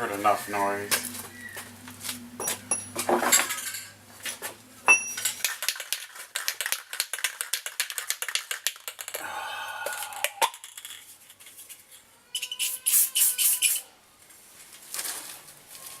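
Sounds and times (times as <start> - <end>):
low hum: 0.8 - 5.2
metal clinks: 2.4 - 4.0, 4.9 - 5.4.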